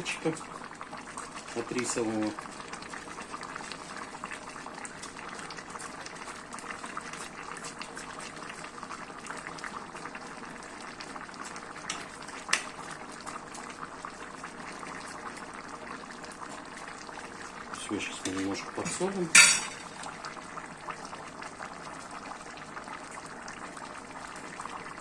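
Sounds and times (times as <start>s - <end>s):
rice bubbling at a boil: 0.0s - 25.0s
crackle of small pops: 11.0s - 13.7s.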